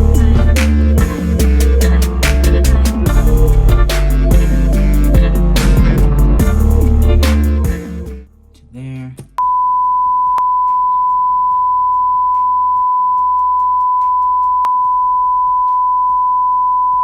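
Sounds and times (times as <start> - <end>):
high-pitched censor beep: 9.4 - 17.0.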